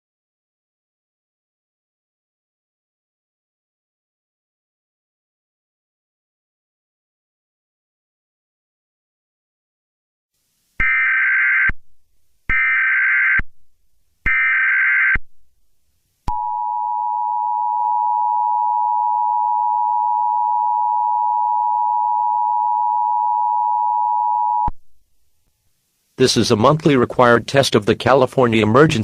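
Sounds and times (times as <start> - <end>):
steady two-tone attention signal: 16.3 - 24.7.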